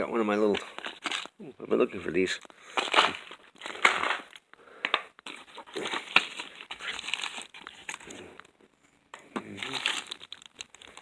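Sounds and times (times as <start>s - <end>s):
hands rummaging through small tools: 0.4s - 1.4s, 2.2s - 11.0s.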